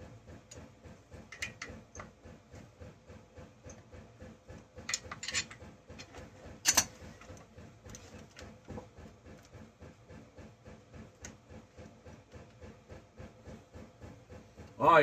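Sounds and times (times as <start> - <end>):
clicks and knocks of tools handled: 4.9 - 6.9.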